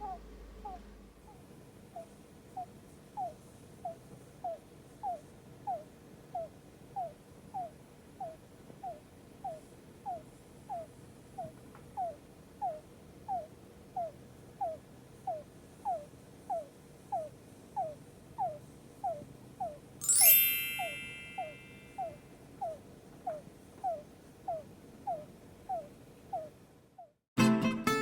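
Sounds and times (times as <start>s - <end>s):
hamster squeaking: 2.0s - 26.6s
bright chime: 20.0s - 22.2s.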